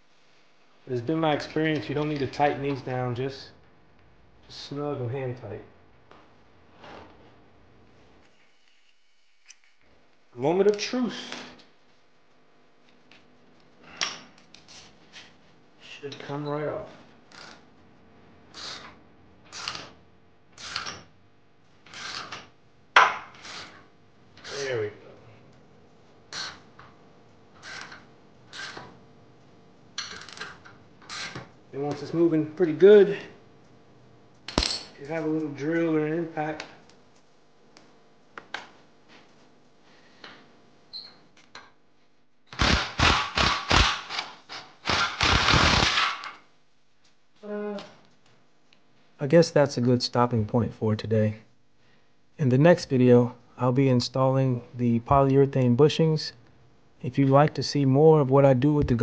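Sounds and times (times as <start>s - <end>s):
power tool spinning: 42.5s - 46.4s.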